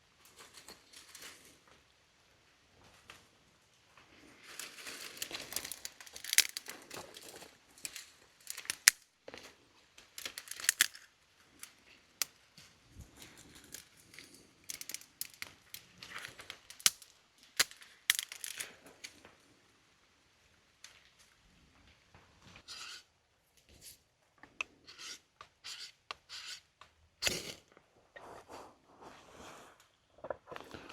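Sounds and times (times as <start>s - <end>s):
wood popping and snapping: 4.6s - 11.1s, 13.6s - 19.3s.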